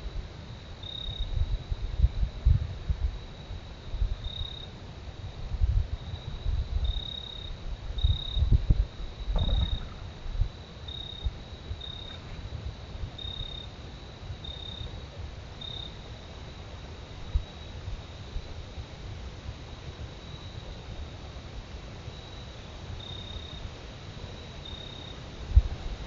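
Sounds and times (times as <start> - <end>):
high insect trill: 0.5 - 2.1, 3.2 - 4.8, 5.9 - 15.0, 22.1 - 23.7
low rumbling: 8.4 - 11.4.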